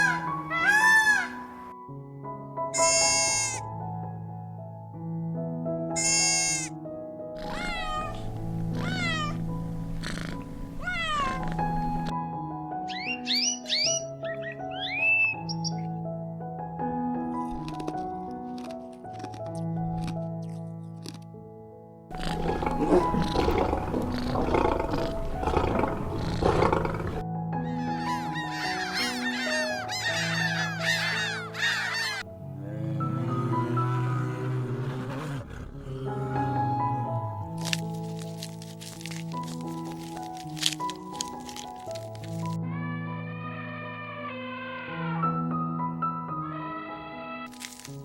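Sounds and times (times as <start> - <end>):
soft background music: 0.0 - 48.0
cat meowing: 7.4 - 9.5, 10.8 - 12.0
large animal roaring: 22.2 - 27.2, 32.5 - 36.9.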